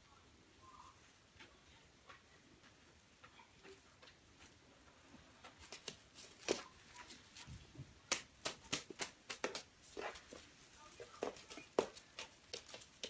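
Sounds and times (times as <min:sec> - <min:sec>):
paws and claws tapping: 0:08.1 - 0:13.0.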